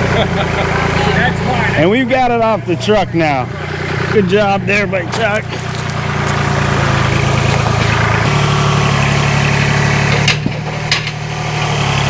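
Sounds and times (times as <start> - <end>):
heavy equipment engine running: 3.3 - 12.0.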